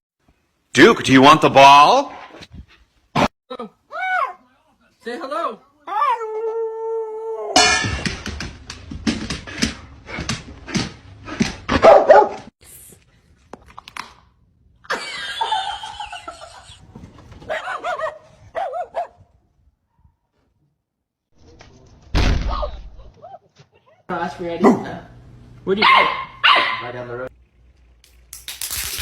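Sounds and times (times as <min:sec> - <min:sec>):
dog barking and yipping: 0:11.7 - 0:12.5, 0:17.4 - 0:19.2, 0:25.8 - 0:26.9.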